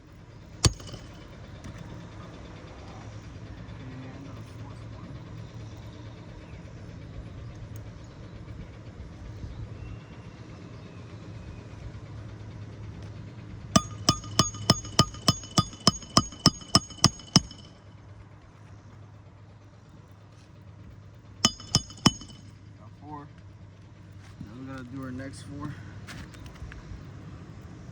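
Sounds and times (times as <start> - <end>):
hammer striking metal nail tool: 0.6 - 1.3, 13.8 - 17.8, 21.4 - 22.5
low steady hum: 0.6 - 2.0, 13.8 - 17.9, 21.4 - 22.6.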